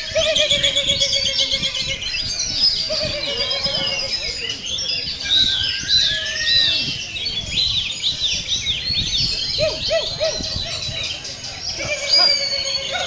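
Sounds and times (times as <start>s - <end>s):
songbirds singing: 0.0s - 13.0s.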